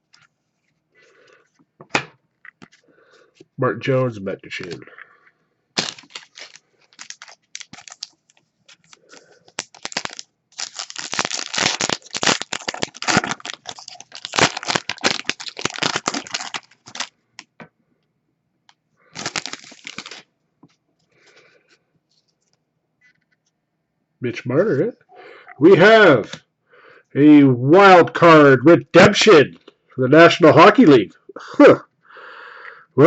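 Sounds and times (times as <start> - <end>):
wrapper crinkling: 5.8 - 17.1, 19.1 - 20.2.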